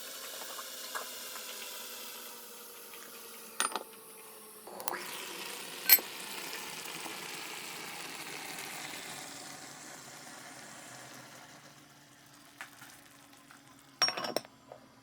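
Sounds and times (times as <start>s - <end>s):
food sizzling in a pot: 0.0s - 3.6s, 4.2s - 14.0s
sharp ringing clink: 14.0s - 14.5s.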